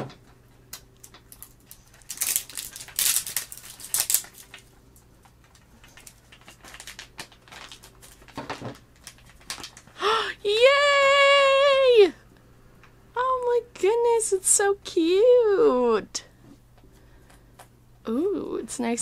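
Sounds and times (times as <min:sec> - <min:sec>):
plastic packaging crinkling: 0:00.7 - 0:10.0.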